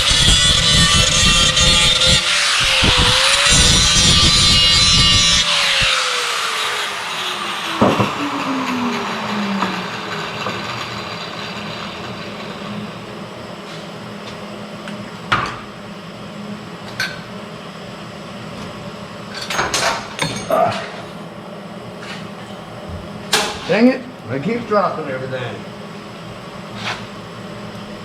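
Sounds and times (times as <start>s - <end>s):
cutoff wheel winding down: 0.0s - 13.1s.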